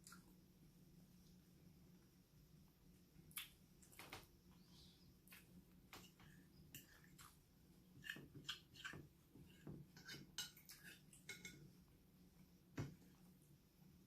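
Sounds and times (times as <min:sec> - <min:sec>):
cutlery clinking against dish: 0:10.0 - 0:11.6.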